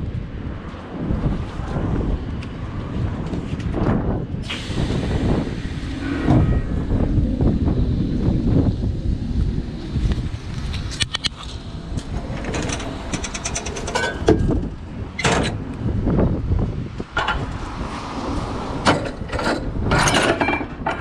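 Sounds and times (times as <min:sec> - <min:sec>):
wind buffeting microphone: 0:00.0 - 0:21.0
metallic clanks and rattles: 0:10.8 - 0:15.7, 0:17.1 - 0:17.6, 0:18.8 - 0:21.0.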